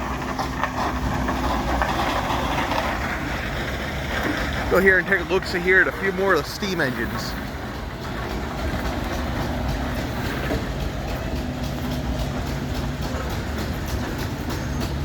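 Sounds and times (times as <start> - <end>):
engine humming steadily: 0.0 - 15.0
rapid even ticking: 4.6 - 15.0.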